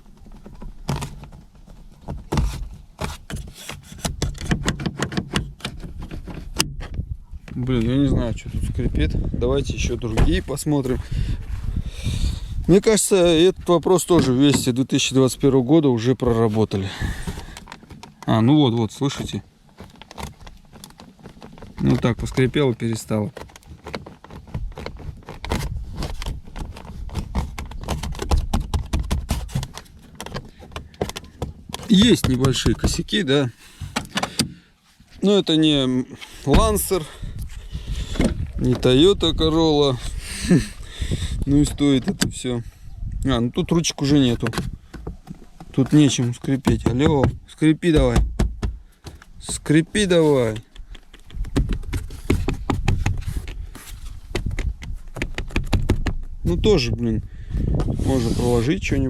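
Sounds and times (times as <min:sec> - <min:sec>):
plastic door handle clicking: 0:33.8 - 0:34.6, 0:41.9 - 0:42.4.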